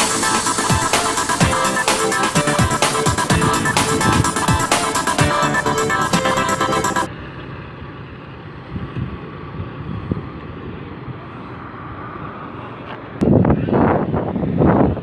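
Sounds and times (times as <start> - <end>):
electronic music: 0.0 - 7.1
wind buffeting microphone: 3.3 - 4.7, 8.6 - 11.3, 13.2 - 15.0.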